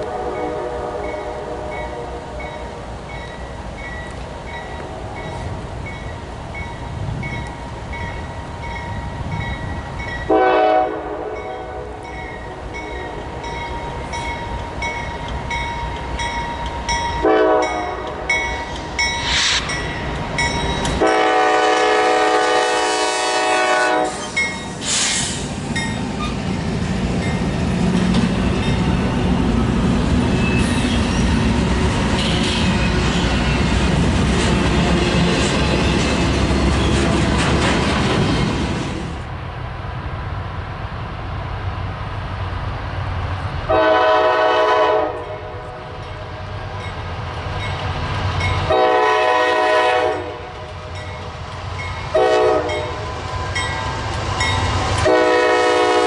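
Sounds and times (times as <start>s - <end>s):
locomotive air horn blasts: 0.0s - 2.4s, 10.3s - 12.0s, 17.2s - 18.3s, 21.0s - 24.4s, 43.7s - 46.0s, 48.7s - 50.6s, 52.1s - 53.0s, 55.0s - 56.0s
train rumbling past: 0.0s - 56.0s
bell ringing: 18.3s - 21.0s.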